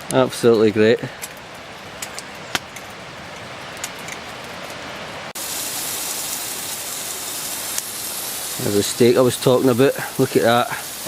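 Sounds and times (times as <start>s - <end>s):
crackling pops: 1.2s - 4.8s
steaks sizzling in a frying pan: 5.4s - 11.0s.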